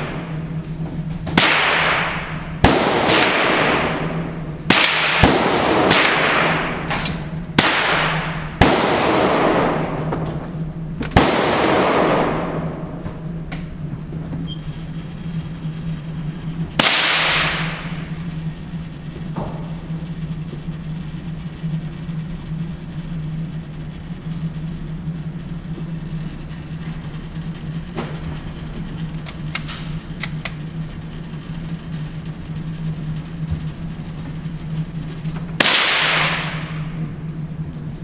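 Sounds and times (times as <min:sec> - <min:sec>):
steady low hum: 0:00.0 - 0:38.0
loud gunshot with echo: 0:01.4 - 0:07.0, 0:07.6 - 0:10.2, 0:11.1 - 0:13.0, 0:16.8 - 0:18.1, 0:35.6 - 0:37.0.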